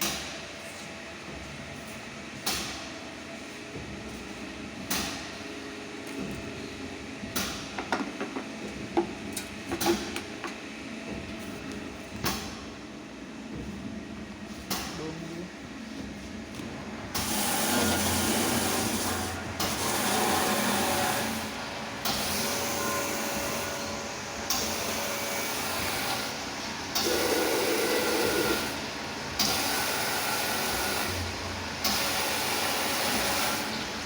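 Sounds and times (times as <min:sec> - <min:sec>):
bottle washing machine spraying: 0:17.2 - 0:34.0.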